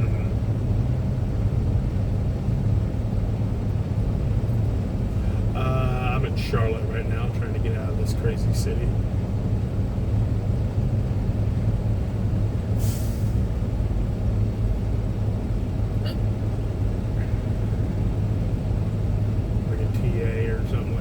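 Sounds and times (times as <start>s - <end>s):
road noise: 0.0s - 21.0s
truck engine rumble: 0.0s - 21.0s
air brakes hissing: 12.8s - 13.5s.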